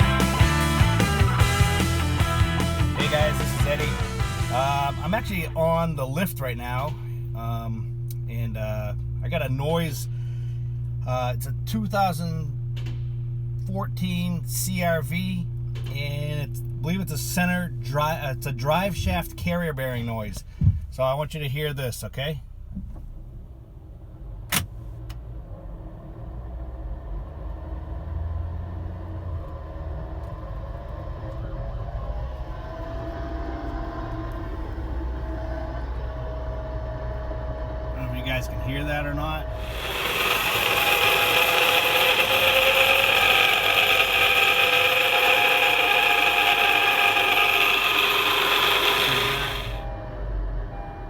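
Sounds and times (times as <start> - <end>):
bearing grinding: 0.0 - 5.6, 37.9 - 49.9
drivetrain rumble and grinding: 0.0 - 49.9
faint rising whine: 25.8 - 51.0.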